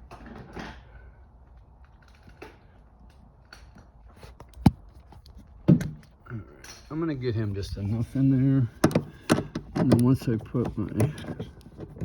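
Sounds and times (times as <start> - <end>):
bolt clicking and scraping: 8.8 - 12.0.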